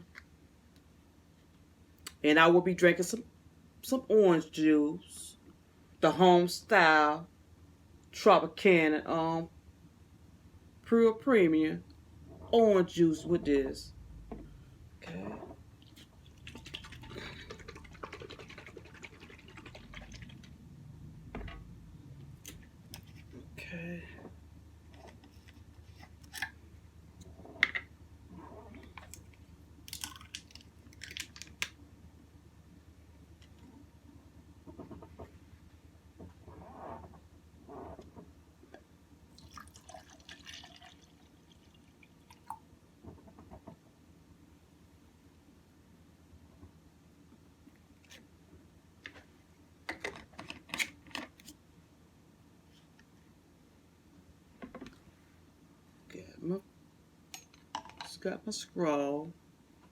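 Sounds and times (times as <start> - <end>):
juice pouring into a glass: 16.0 - 20.6, 39.3 - 42.6.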